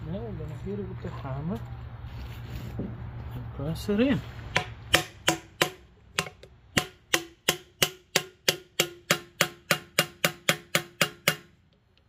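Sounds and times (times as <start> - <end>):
hammer striking metal tool: 4.5 - 11.5.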